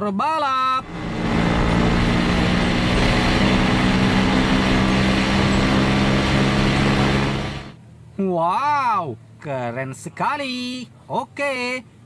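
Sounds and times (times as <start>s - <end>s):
low machine drone: 0.8s - 7.8s.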